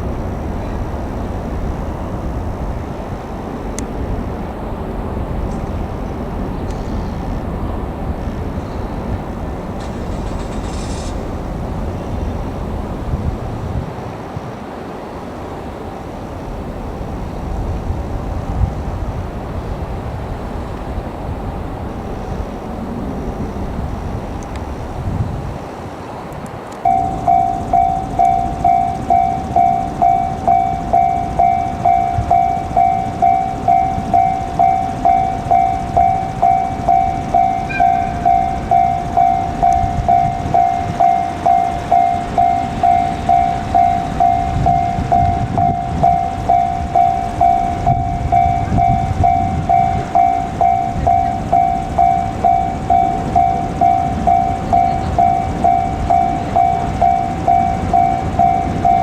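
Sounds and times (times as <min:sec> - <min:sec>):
freight train rumbling past: 0:00.0 - 0:59.0
level-crossing alarm bell: 0:04.8 - 0:13.4, 0:26.8 - 0:59.0.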